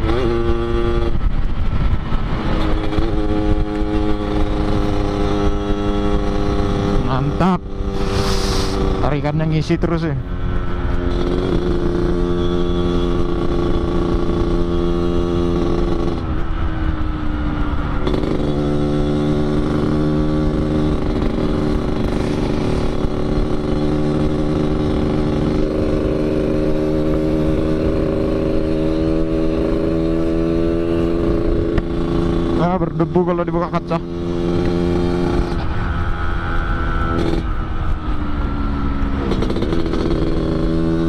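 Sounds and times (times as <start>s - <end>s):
two-stroke motorcycle engine revving: 0.0s - 16.6s, 17.2s - 41.0s.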